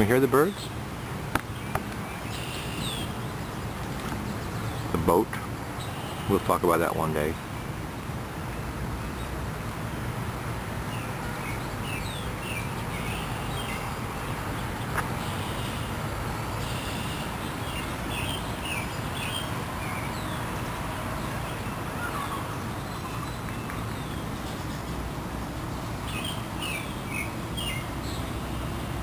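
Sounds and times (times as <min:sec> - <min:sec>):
songbirds chirping: 0:00.0 - 0:29.0.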